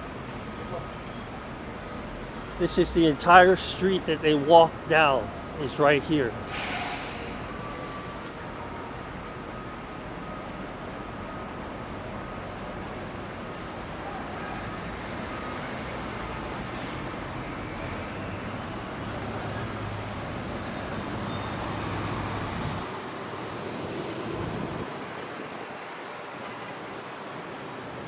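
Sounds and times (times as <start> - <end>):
passing cars and tyres: 16.7 - 27.0.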